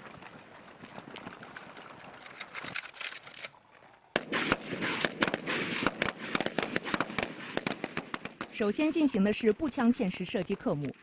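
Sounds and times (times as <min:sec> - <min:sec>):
rifle shots: 0:04.2 - 0:08.9.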